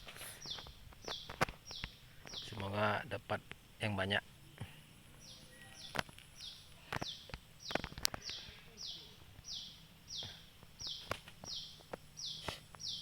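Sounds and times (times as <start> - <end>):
high chirping call: 0.4 - 2.7, 5.2 - 13.0.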